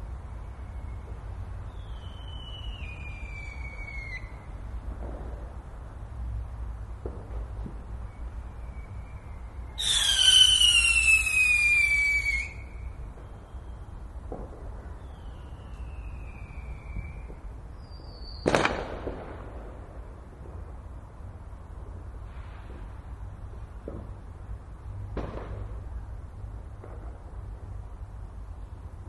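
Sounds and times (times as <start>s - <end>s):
distant firework whistles: 0.0s - 5.5s, 7.0s - 19.5s
whistling firework falling pitch: 0.5s - 4.5s, 7.7s - 19.2s
firework bang: 18.4s - 20.6s, 25.1s - 25.8s.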